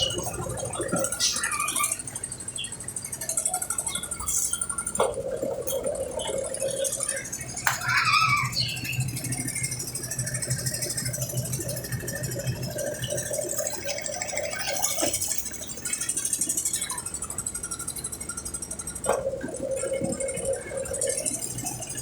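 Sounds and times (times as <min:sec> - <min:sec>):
washing machine running: 0:00.0 - 0:22.0.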